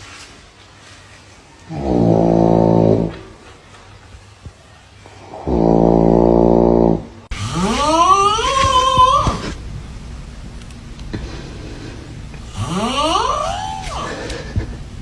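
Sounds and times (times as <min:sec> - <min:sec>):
buzzing snore: 0:01.7 - 0:03.3, 0:05.2 - 0:08.1, 0:12.5 - 0:14.1.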